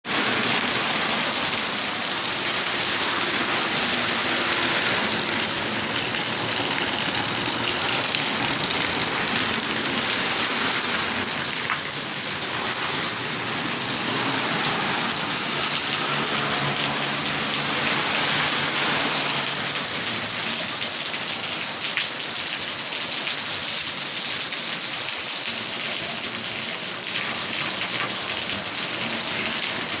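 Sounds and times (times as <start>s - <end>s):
small waterfall splashing: 0.0s - 30.0s.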